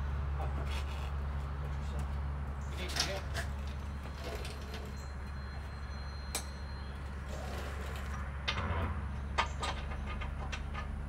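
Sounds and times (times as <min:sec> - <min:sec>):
knocks and clicks on metal parts: 0:08.5 - 0:11.0.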